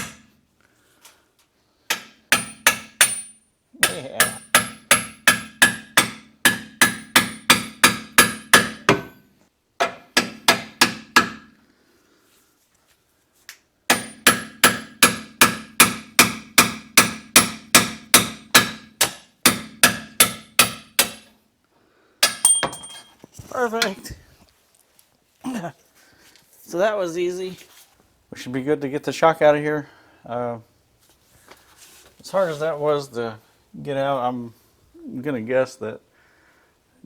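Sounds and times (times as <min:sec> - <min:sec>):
hammer striking steel punch: 0:01.9 - 0:09.1, 0:13.9 - 0:21.3, 0:22.2 - 0:23.1.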